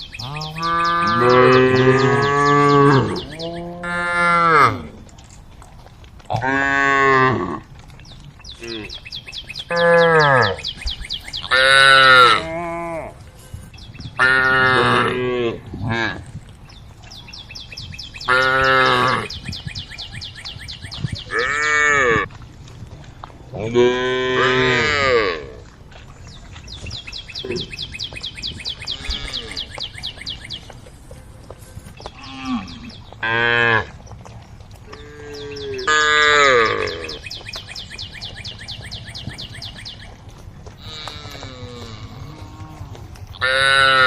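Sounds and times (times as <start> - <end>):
cattle mooing: 0.2 - 5.0, 9.7 - 10.7, 11.4 - 13.2, 14.2 - 16.3, 23.6 - 25.6, 28.8 - 29.8, 34.9 - 37.2, 40.8 - 44.0.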